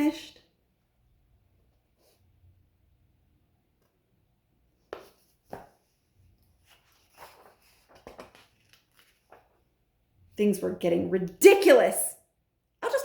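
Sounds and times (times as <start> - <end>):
paper pages rustling: 4.8 - 9.8
book pages clicking: 6.8 - 9.5.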